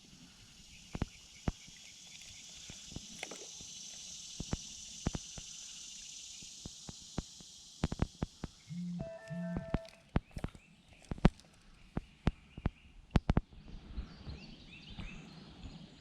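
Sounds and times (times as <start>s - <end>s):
insect chorus buzzing: 0.0s - 11.3s.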